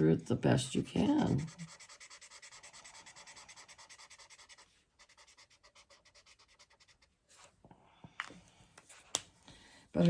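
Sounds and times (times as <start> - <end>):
marker scribbling on paper: 0.8 - 7.0.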